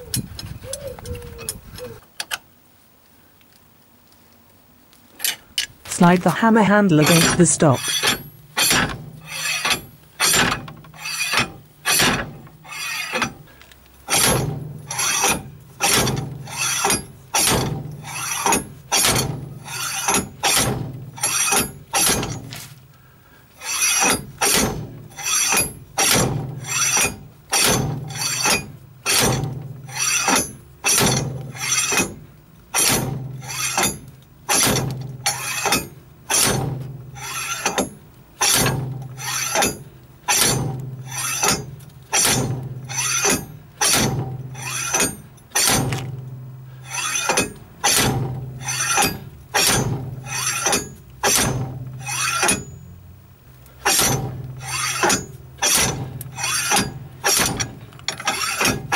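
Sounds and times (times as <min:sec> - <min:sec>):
slide hammer striking metal: 0:07.0 - 0:13.3, 0:14.1 - 0:22.4, 0:32.8 - 0:46.1, 0:46.8 - 0:52.8, 0:53.8 - 0:58.9.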